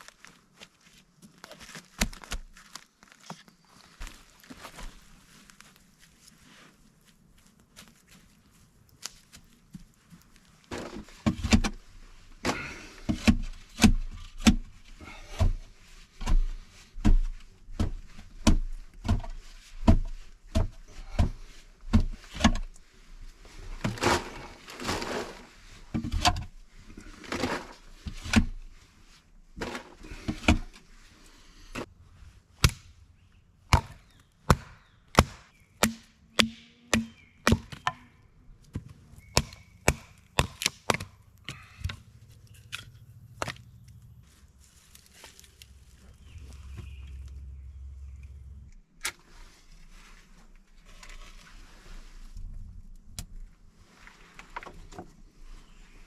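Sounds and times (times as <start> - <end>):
scraping: 23.6 - 28.6
axe chopping wood: 32.6 - 32.9, 33.7 - 38.0, 38.7 - 42.0.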